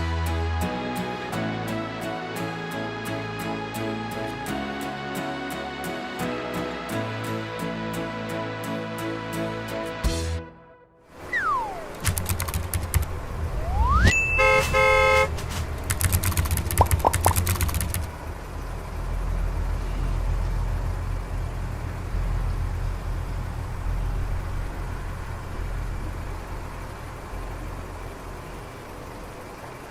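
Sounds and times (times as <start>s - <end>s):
vehicle engine rumbling: 11.1s - 29.9s
vehicle horn tooting: 14.1s - 15.4s.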